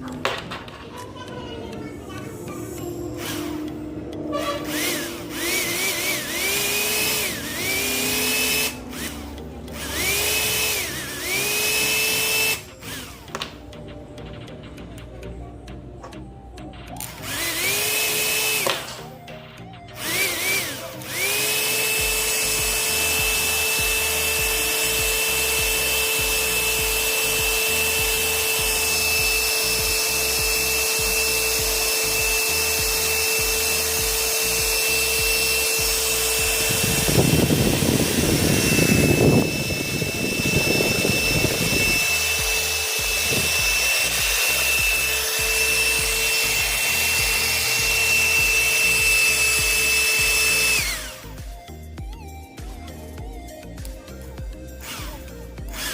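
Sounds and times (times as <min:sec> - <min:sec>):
small motor high-pitched whine: 0:02.2 - 0:14.9, 0:16.1 - 0:55.9
loud rough noise: 0:02.3 - 0:13.5, 0:20.0 - 0:51.5.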